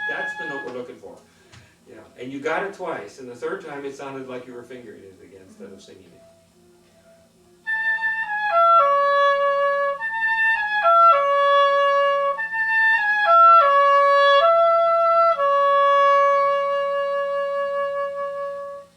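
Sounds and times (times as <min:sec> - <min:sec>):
oboe playing falling phrase: 0:00.0 - 0:00.9, 0:05.4 - 0:18.9.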